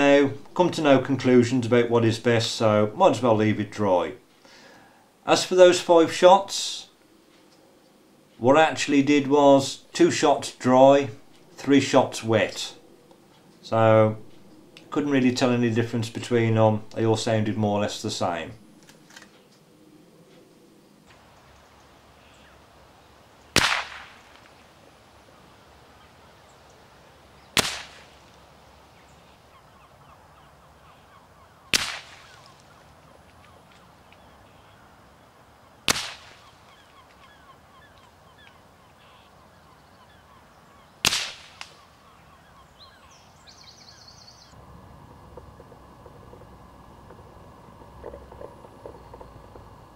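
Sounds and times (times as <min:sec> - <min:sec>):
suppressed rifle shots: 0:23.6 - 0:24.6, 0:27.6 - 0:28.4, 0:31.7 - 0:32.5, 0:35.8 - 0:36.7, 0:41.0 - 0:41.9.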